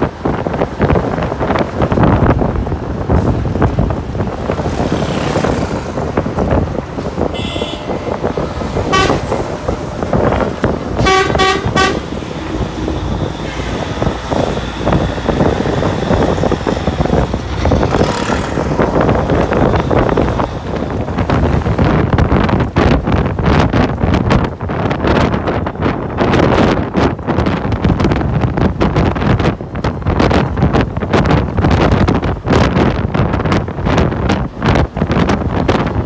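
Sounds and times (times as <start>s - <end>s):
wind buffeting microphone: 0.0s - 36.0s
vehicle horn toots: 7.2s - 15.0s.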